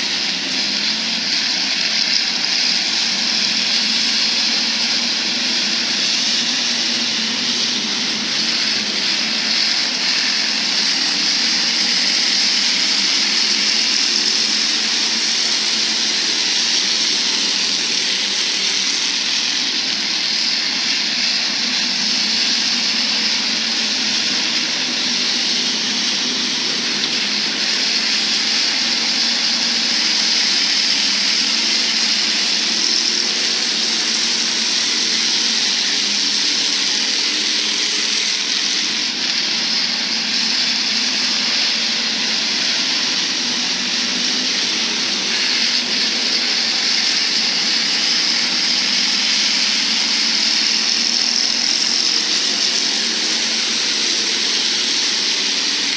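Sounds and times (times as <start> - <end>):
race car engines droning: 0.0 - 55.9.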